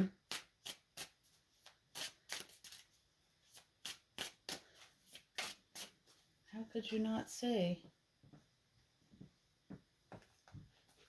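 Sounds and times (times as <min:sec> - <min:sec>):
cards being shuffled: 0:00.3 - 0:06.0.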